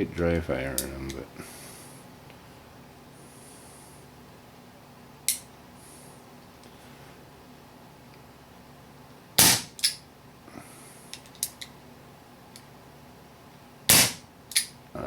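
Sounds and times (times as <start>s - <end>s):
air pistol pop: 9.4s - 9.9s, 13.9s - 14.2s
pistol mechanical clicks: 9.4s - 10.0s, 13.9s - 14.7s.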